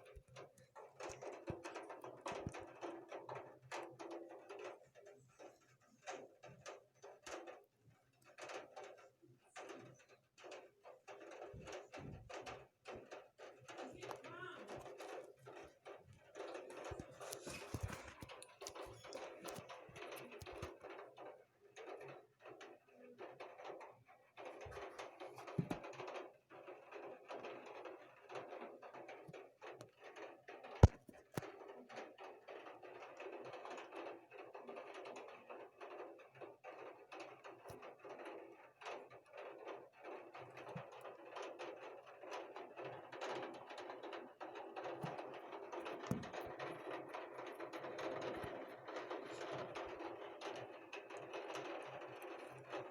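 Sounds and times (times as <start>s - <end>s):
rain patter: 0.0s - 52.9s.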